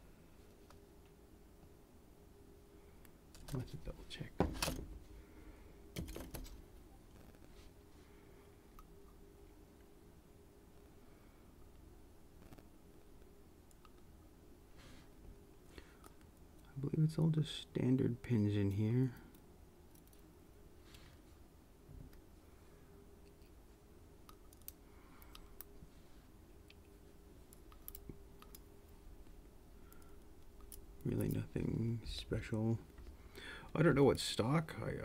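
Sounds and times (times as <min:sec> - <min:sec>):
faint steady hum: 0:00.0 - 0:35.0
small parts clicking: 0:24.2 - 0:25.7, 0:27.5 - 0:28.7.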